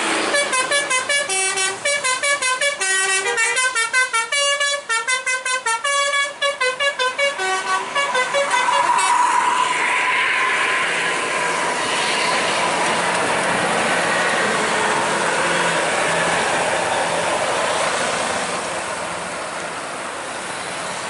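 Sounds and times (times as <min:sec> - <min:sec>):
vehicle engine hum: 0:00.0 - 0:03.2, 0:05.6 - 0:21.0
tyre road noise: 0:00.0 - 0:21.0
vehicle horn note: 0:00.3 - 0:09.2.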